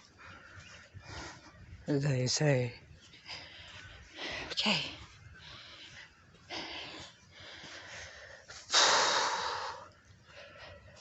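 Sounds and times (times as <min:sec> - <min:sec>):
person breathing hard: 0:03.2 - 0:04.5, 0:05.2 - 0:11.0.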